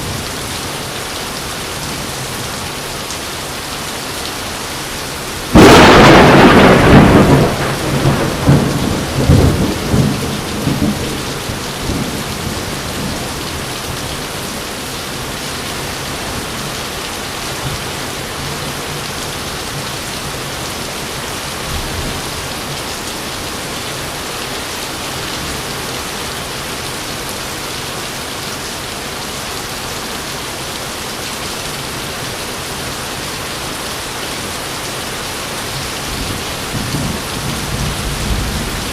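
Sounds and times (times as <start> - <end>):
steady rain falling: 0.0 - 38.9
thunderclap rumbling: 5.5 - 13.1, 36.3 - 38.9.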